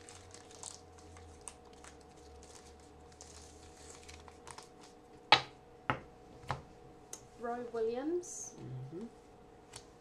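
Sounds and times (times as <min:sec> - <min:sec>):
cards and foil wrapper rustling: 0:00.0 - 0:05.0
low steady hum: 0:00.0 - 0:10.0.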